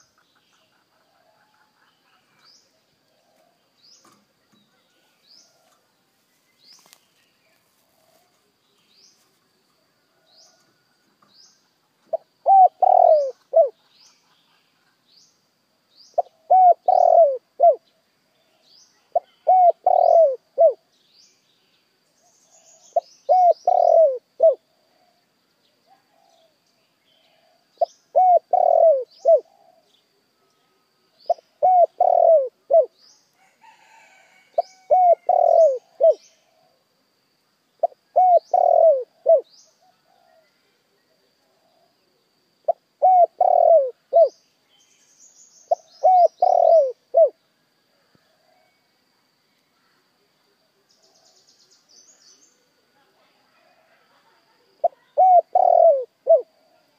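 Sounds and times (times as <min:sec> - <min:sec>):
dove cooing: 0:12.1 - 0:13.8, 0:16.2 - 0:17.8, 0:19.2 - 0:20.8, 0:22.9 - 0:25.1, 0:27.4 - 0:29.9, 0:31.3 - 0:32.9, 0:34.6 - 0:36.8, 0:37.8 - 0:40.5, 0:42.7 - 0:44.4, 0:45.7 - 0:47.4, 0:54.7 - 0:56.9.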